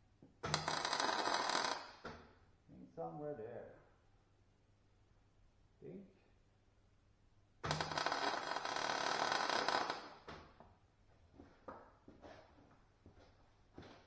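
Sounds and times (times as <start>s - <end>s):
welding arc crackling: 7.7s - 10.2s.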